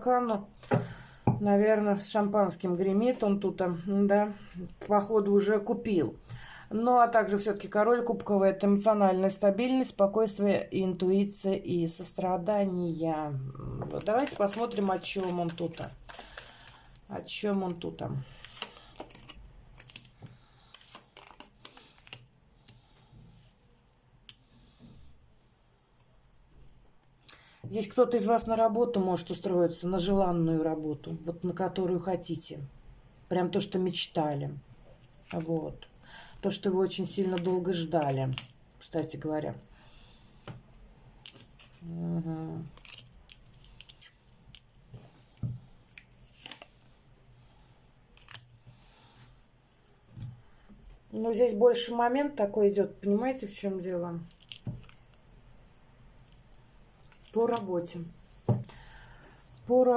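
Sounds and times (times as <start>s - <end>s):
tarot cards rustling and clicking: 13.7s - 22.9s, 35.0s - 35.9s, 36.6s - 39.3s, 40.4s - 47.0s, 48.1s - 48.8s, 53.2s - 55.3s, 56.2s - 59.1s
cards clicking and rustling: 13.9s - 17.1s, 18.3s - 22.8s, 41.2s - 41.8s, 42.7s - 44.8s, 45.9s - 46.7s, 54.3s - 55.2s.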